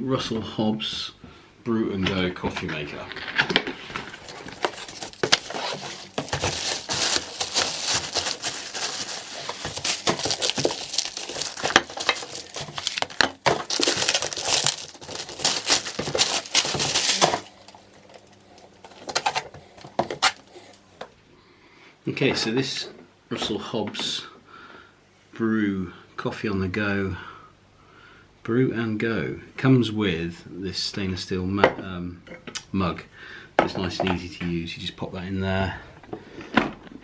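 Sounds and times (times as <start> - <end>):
packaging crinkling: 3.0 - 21.1.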